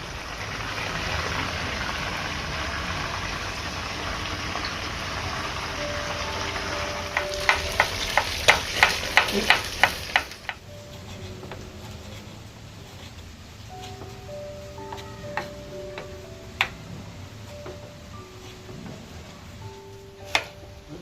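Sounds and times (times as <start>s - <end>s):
fish sizzling in hot oil: 0.1s - 10.6s.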